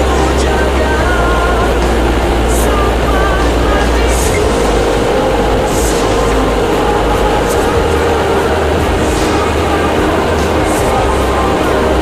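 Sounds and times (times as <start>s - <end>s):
loud machinery drone: 0.0s - 12.0s.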